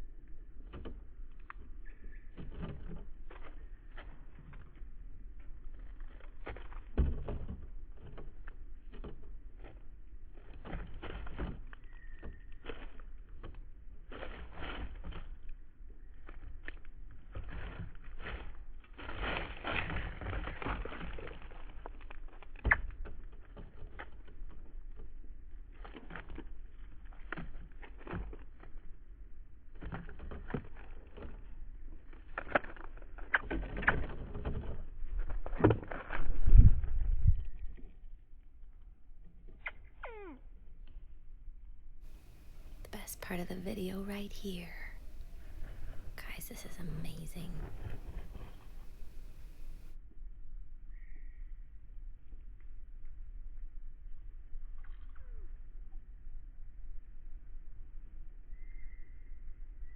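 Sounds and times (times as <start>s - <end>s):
faint bird chirp: 1.8s - 2.4s, 11.8s - 12.6s, 50.9s - 51.6s, 58.5s - 59.9s.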